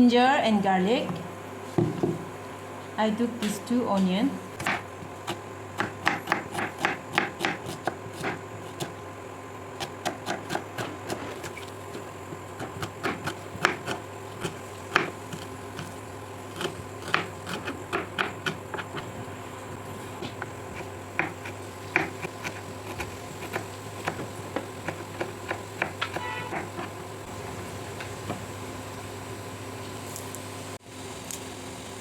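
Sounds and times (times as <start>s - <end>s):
knife chopping on cutting board: 4.6s - 8.9s, 9.8s - 12.0s, 12.6s - 15.9s, 16.6s - 27.0s.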